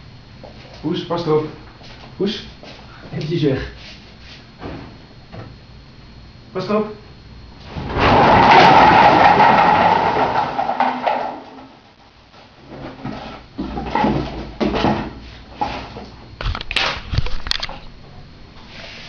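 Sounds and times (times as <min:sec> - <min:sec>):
bottles tumbling and clattering: 0:07.7 - 0:11.8, 0:12.8 - 0:16.0
bottles knocking and rolling: 0:08.0 - 0:11.7.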